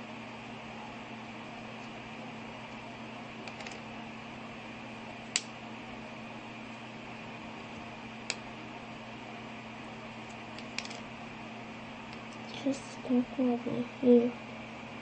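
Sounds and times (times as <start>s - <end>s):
room hiss and hum: 0.0s - 15.0s.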